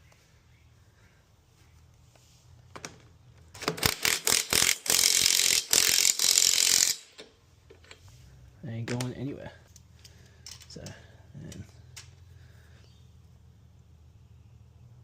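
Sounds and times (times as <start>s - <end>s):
socket ratchet clicking: 3.6s - 7.3s.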